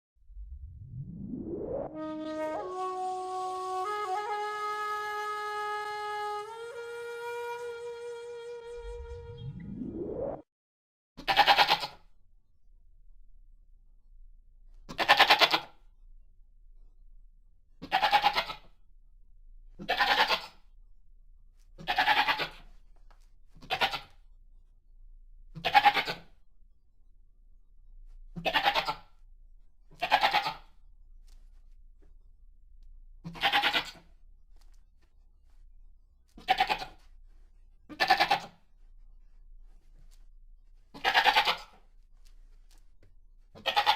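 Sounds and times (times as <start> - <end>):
goat bleating: 11.2 - 12.0, 14.9 - 15.7, 17.8 - 18.6, 19.8 - 20.6, 21.8 - 22.6, 23.6 - 24.1, 25.6 - 26.2, 28.4 - 29.1, 30.0 - 30.7, 33.2 - 34.0, 36.4 - 37.0, 37.9 - 38.6, 40.9 - 41.8, 43.6 - 43.9.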